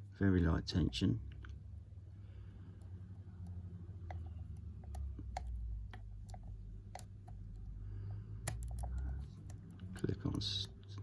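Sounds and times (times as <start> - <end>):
lock pick clicking in lock: 8.4 - 10.1.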